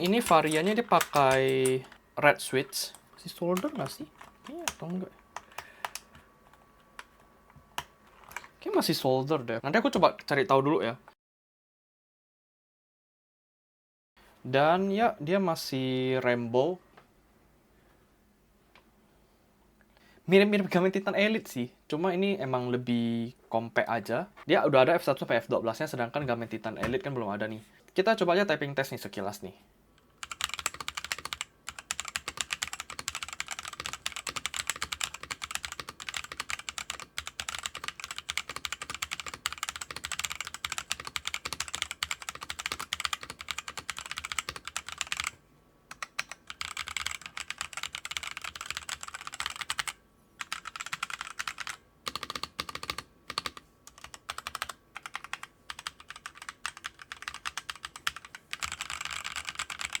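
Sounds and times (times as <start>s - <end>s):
fast typing on mechanical keyboard: 0.0s - 6.3s, 30.2s - 60.0s.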